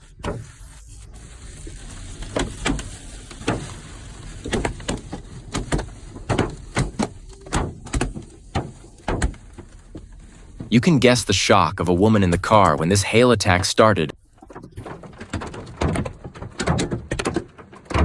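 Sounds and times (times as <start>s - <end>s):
hailstones striking a car: 1.2s - 11.0s, 14.4s - 18.0s.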